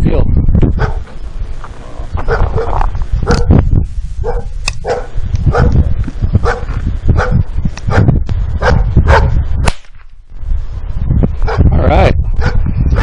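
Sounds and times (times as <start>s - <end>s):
dog barking: 0.8s - 1.0s, 2.3s - 3.5s, 4.2s - 5.8s, 6.4s - 9.4s, 11.4s - 11.7s, 12.4s - 13.0s.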